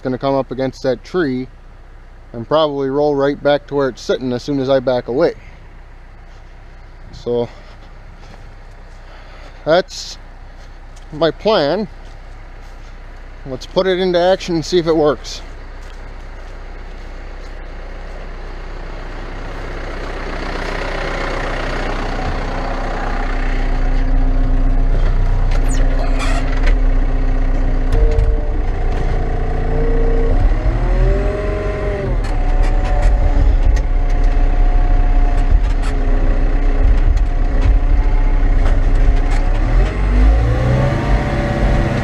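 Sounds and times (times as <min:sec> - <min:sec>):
diesel engine revving: 0:02.2 - 0:42.0.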